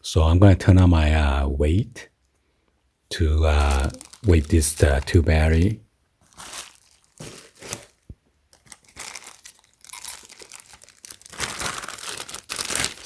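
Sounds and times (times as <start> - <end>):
plastic packaging crinkling: 3.5 - 13.0.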